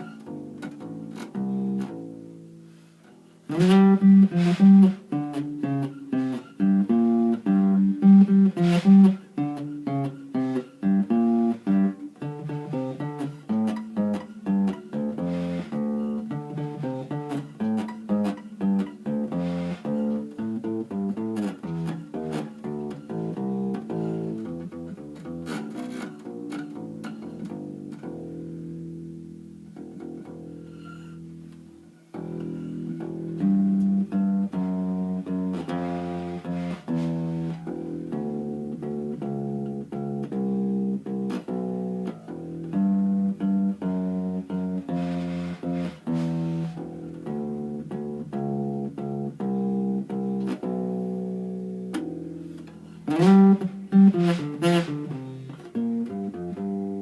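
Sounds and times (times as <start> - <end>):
acoustic bass plucked notes: 0.0 - 57.0.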